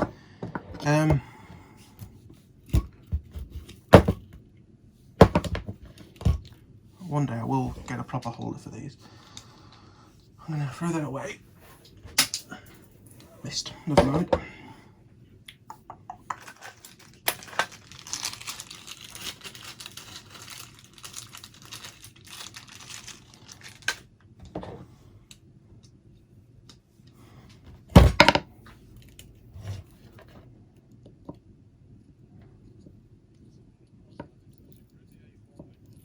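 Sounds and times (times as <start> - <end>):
crackling rustling handling: 16.3 - 24.4.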